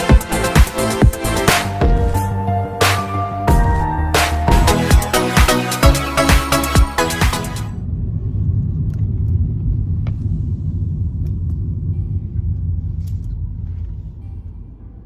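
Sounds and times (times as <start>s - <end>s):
electronic music: 0.0s - 7.8s
car rumbling on the road: 7.8s - 15.0s.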